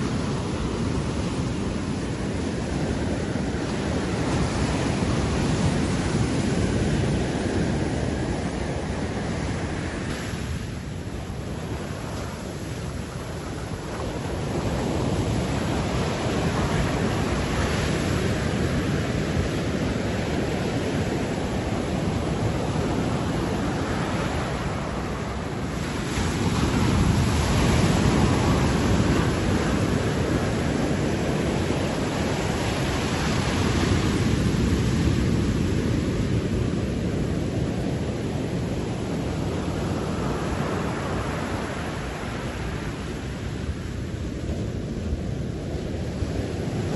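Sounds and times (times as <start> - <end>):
ocean surf breaking on beach: 0.0 - 46.9.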